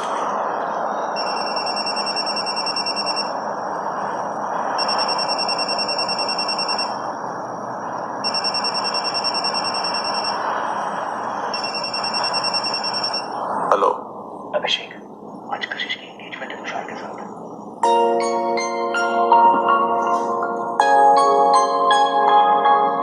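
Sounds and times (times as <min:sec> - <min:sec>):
warbling phone ringtone: 0:01.2 - 0:03.3, 0:08.2 - 0:10.4, 0:11.5 - 0:13.3.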